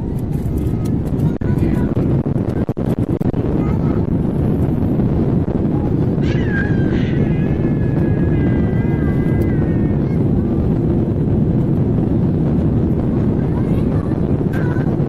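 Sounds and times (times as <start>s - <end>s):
airliner cabin engine roar: 0.0s - 15.0s
high wavering cry: 6.2s - 10.2s.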